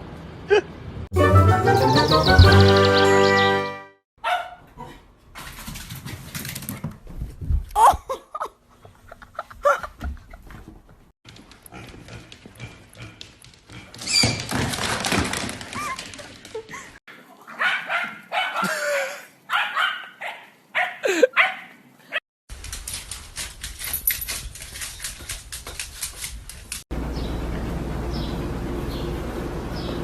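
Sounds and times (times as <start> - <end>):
dog barking and whimpering: 4.2 - 5.0, 17.4 - 18.9, 19.5 - 22.2.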